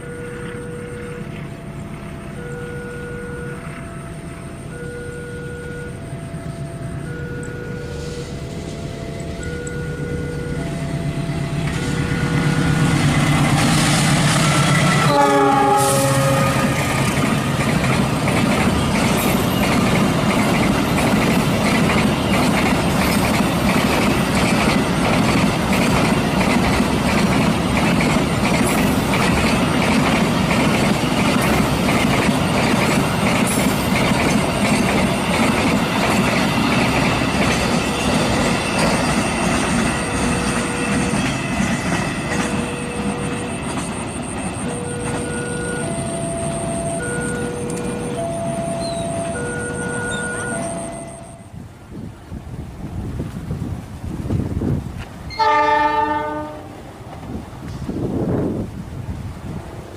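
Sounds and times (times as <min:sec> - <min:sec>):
locomotive engine running: 0:00.0 - 0:51.9
train horn: 0:05.0 - 0:17.5, 0:55.3 - 0:57.0
train wheels clattering on rails: 0:07.5 - 0:51.6.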